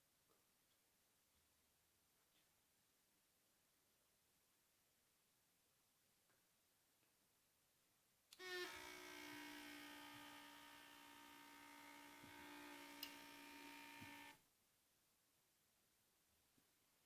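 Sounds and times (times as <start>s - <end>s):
vibration motor buzzing: 8.4s - 14.4s.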